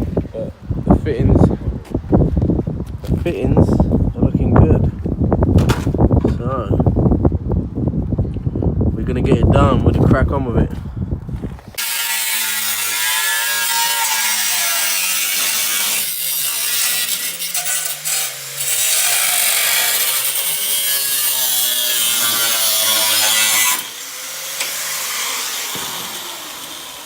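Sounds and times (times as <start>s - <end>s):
power tool cutting metal: 11.8s - 27.0s.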